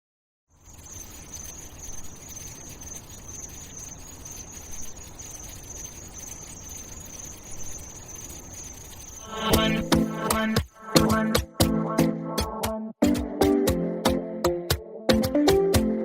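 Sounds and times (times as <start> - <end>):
high-pitched insect-like whine: 0.5 - 11.3
background hiss: 0.5 - 11.8.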